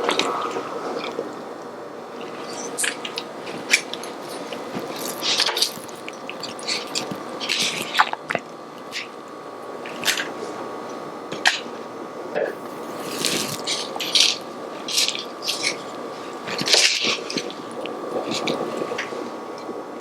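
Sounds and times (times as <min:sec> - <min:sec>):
utensils scraping a plate: 0:12.5 - 0:19.1.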